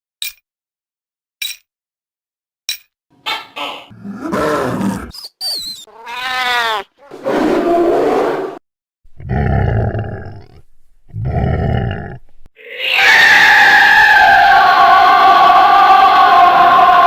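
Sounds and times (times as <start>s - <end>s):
cartoon monster roars: 3.9s - 5.1s, 9.2s - 14.2s
choir-like music: 12.6s - 17.0s.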